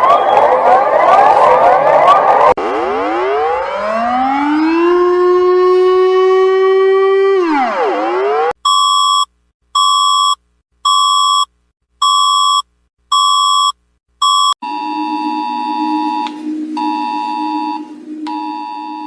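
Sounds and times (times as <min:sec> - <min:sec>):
electronic alarm beeping: 0:08.7 - 0:19.0
electronic alert tone with hum: 0:14.2 - 0:19.0.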